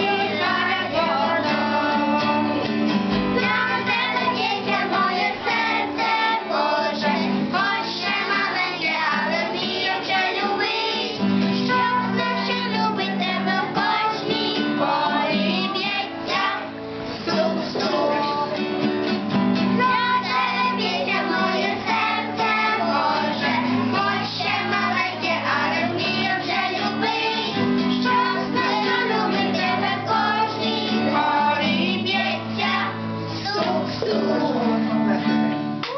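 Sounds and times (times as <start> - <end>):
person singing: 0.0 - 2.7, 17.3 - 18.7, 19.8 - 35.9
guitar accompaniment: 0.0 - 35.9.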